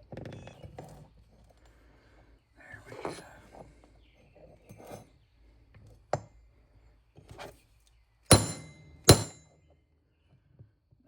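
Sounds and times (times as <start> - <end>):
hammer striking metal: 8.3 - 9.4.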